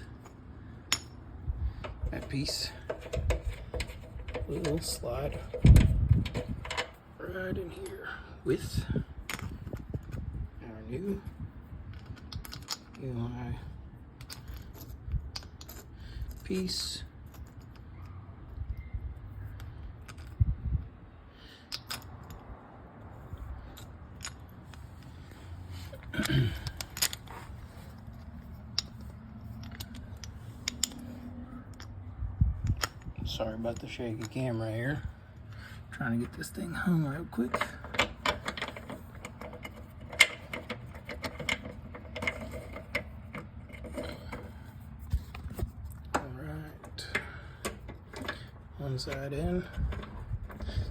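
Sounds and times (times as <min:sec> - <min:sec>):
metallic clicks and knocks: 0:01.8 - 0:07.0, 0:25.9 - 0:32.0, 0:32.6 - 0:34.6, 0:37.3 - 0:50.9
metallic clicks and clinks: 0:25.9 - 0:32.0.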